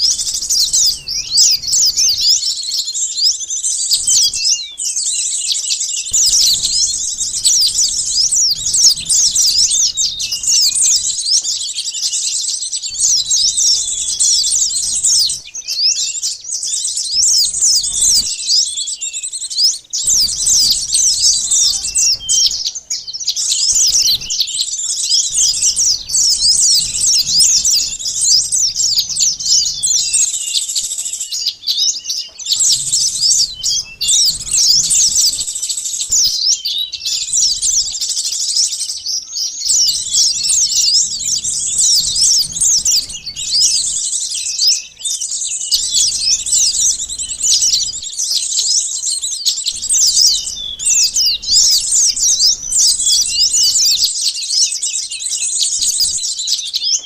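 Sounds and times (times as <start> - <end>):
sunbirds chirping and twittering: 0.0 - 57.0.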